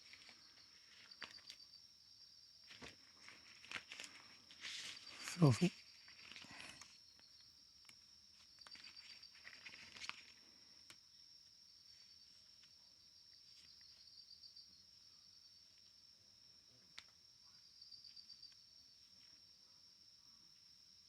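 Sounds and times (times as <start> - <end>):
crickets chirping: 0.0 - 21.0
soft rustles: 2.6 - 7.0, 7.8 - 10.8.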